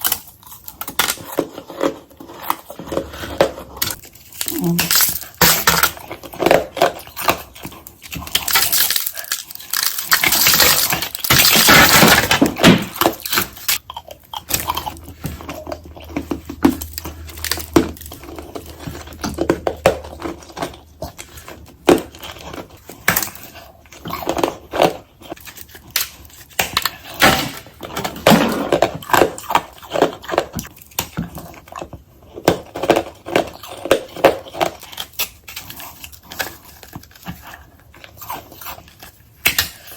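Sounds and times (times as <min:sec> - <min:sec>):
ice crunching: 0:00.0 - 0:13.8.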